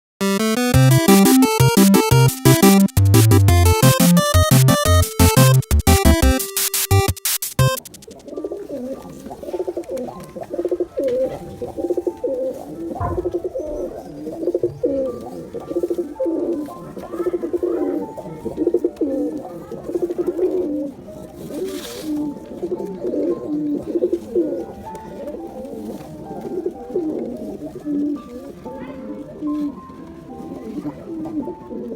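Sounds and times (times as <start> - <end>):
pigeons cooing: 7.9 - 31.9.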